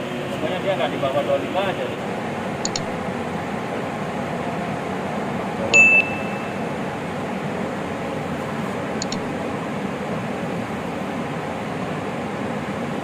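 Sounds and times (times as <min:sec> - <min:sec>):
steady fan noise: 0:00.0 - 0:13.0
faint double clicks: 0:02.6 - 0:02.9, 0:09.0 - 0:09.2
short electronic beep: 0:05.8 - 0:06.6.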